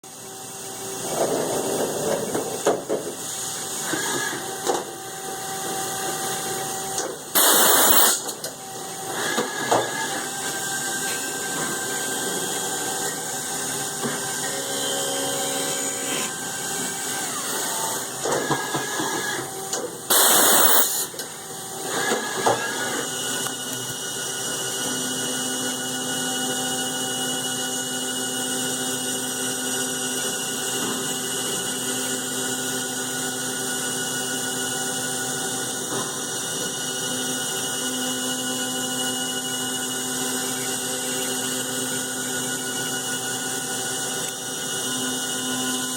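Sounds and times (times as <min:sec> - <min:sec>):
milling machine whine: 0:03.3 - 0:45.9.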